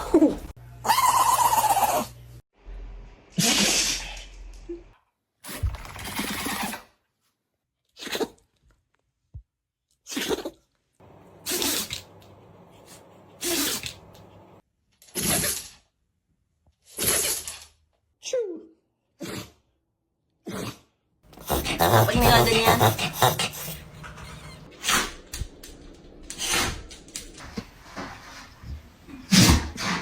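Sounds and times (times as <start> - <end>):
dogs sneezing: 11.4 - 12.0, 13.4 - 14.1, 21.3 - 25.1.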